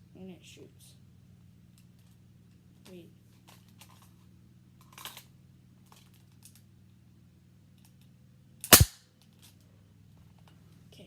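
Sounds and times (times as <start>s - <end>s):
airsoft pistol shot: 8.7s - 9.0s.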